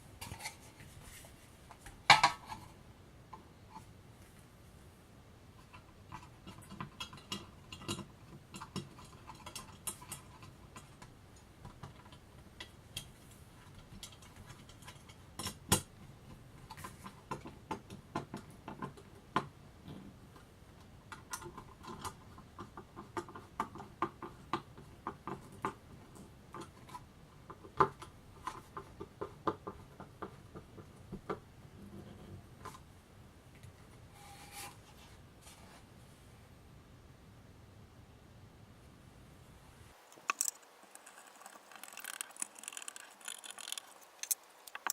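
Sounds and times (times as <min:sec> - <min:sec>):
hand tools being handled: 0:40.0 - 0:44.9.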